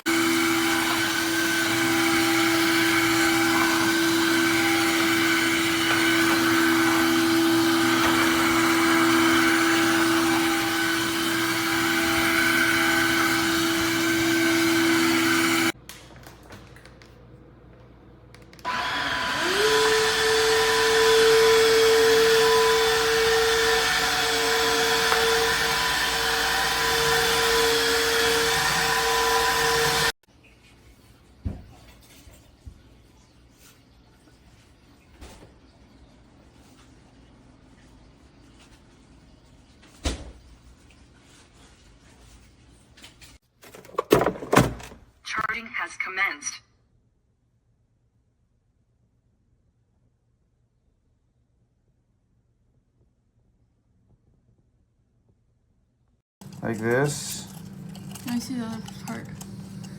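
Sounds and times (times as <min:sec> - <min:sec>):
floor vacuum motor whining: 0:00.0 - 0:15.8, 0:18.4 - 0:30.2, 0:56.4 - 0:59.9.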